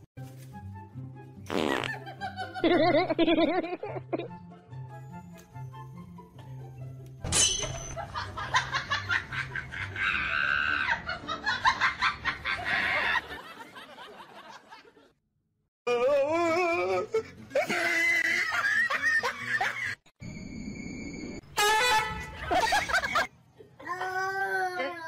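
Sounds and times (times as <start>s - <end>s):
people laughing hard: 2.0s - 4.3s, 8.0s - 15.1s, 17.0s - 20.0s, 22.2s - 23.8s.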